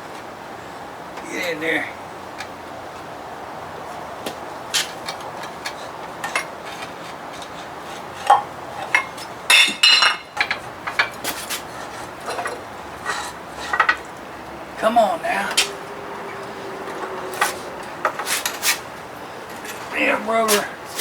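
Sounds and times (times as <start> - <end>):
hand tools clinking on metal: 4.8 - 21.0.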